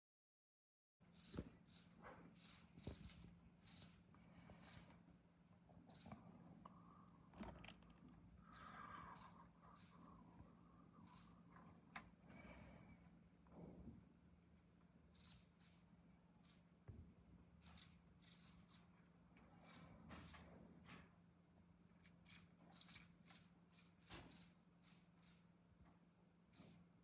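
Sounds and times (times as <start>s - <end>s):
cricket chirping: 1.1s - 4.0s, 4.6s - 4.8s, 8.5s - 10.0s, 11.0s - 11.3s, 15.1s - 15.8s, 16.4s - 16.6s, 17.6s - 18.9s, 19.6s - 20.4s, 22.0s - 25.4s, 26.5s - 26.8s.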